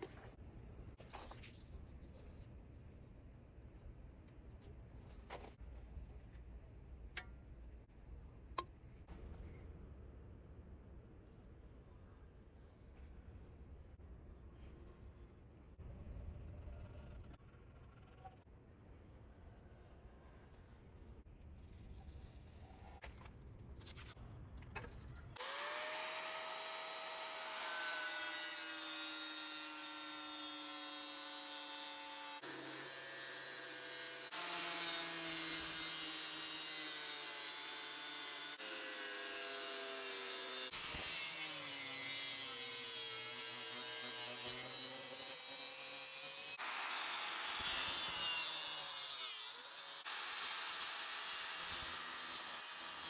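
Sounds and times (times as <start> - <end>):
power tool cutting steel: 25.4 - 53.0.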